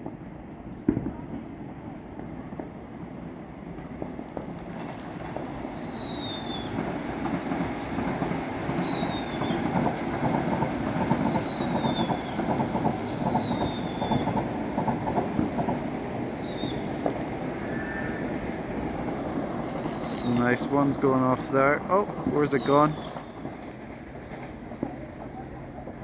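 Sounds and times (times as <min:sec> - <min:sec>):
high squeal sliding down: 0:17.6 - 0:20.3.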